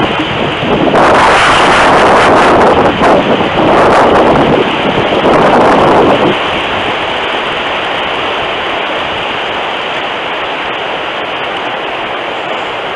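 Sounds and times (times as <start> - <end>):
rain: 0.0 - 12.9
wind: 0.0 - 12.9.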